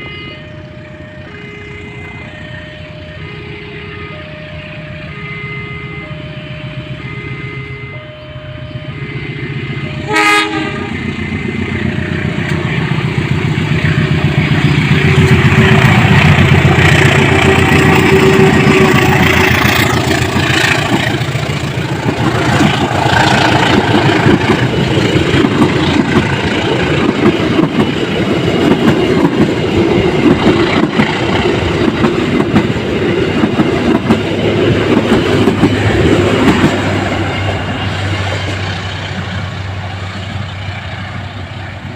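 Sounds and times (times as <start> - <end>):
locomotive engine running: 0.0 - 41.9
locomotive horn blast: 1.3 - 12.7, 15.0 - 21.4.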